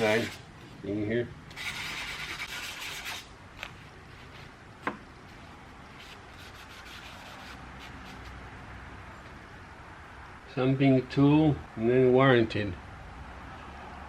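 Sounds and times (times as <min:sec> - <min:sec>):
sandpaper rubbing on steel: 0:00.0 - 0:00.4, 0:01.6 - 0:03.3, 0:06.0 - 0:08.3.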